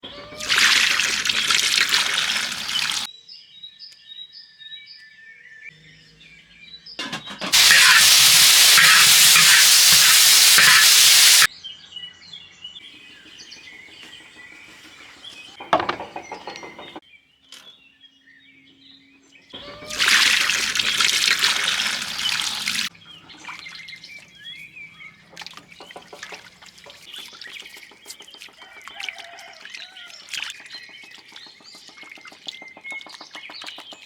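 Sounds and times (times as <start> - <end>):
birds chirping faintly: 0.1 - 11.5
food sizzling while frying: 0.4 - 3.1, 7.5 - 11.5, 19.8 - 22.9.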